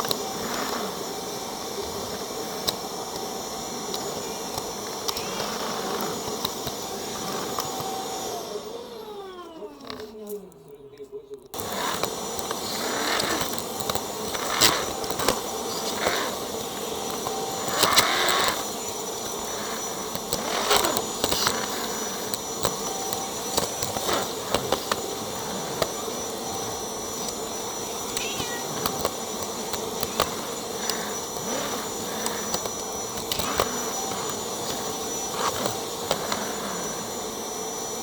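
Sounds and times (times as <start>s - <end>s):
vacuum cleaner running: 0.0s - 10.8s, 11.5s - 38.0s
cat meowing: 28.1s - 28.9s.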